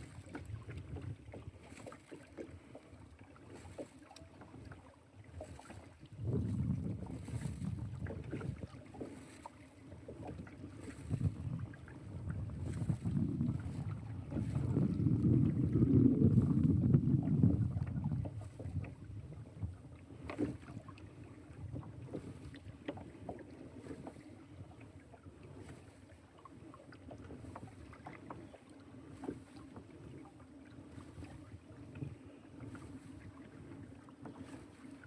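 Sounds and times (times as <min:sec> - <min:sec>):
wind rumbling on microphone: 0:00.0 - 0:01.6, 0:05.5 - 0:09.1, 0:10.1 - 0:22.6
small splashes and ticks: 0:00.0 - 0:16.8, 0:17.5 - 0:35.0
water lapping against hull: 0:00.0 - 0:35.0.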